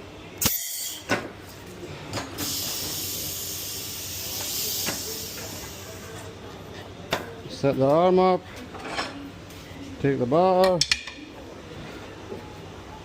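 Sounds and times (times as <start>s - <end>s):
compressed air hissing: 2.4s - 6.2s.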